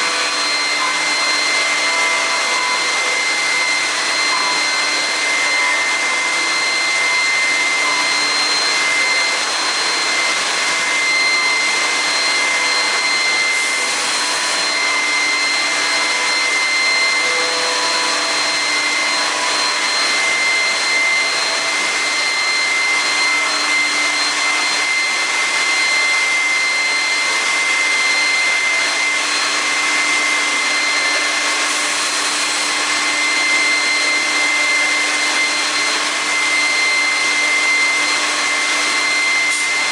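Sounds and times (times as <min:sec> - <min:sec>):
machine high whine: 0:00.0 - 0:39.9.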